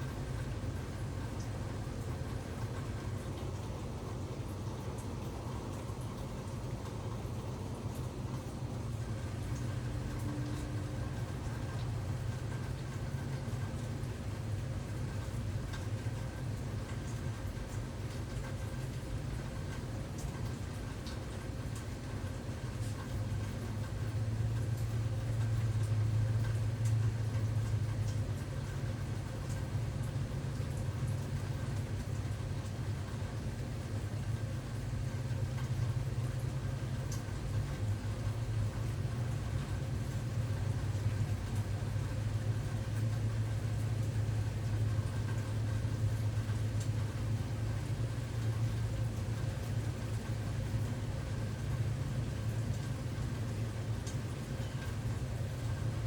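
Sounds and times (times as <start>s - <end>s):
low motor hum: 0.0s - 15.3s.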